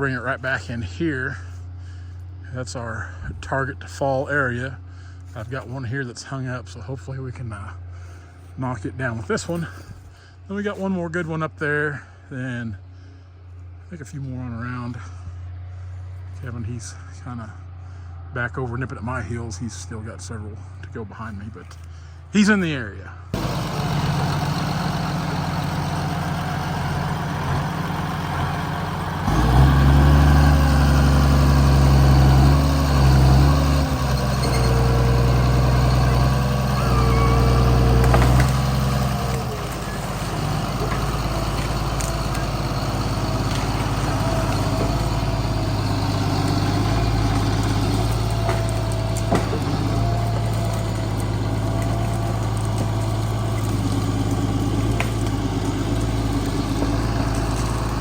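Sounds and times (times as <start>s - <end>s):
diesel engine revving: 23.3s - 58.0s.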